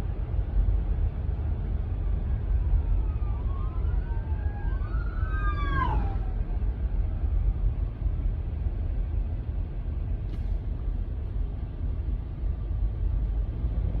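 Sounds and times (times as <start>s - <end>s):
low rumble of vehicle on road: 0.0s - 14.0s.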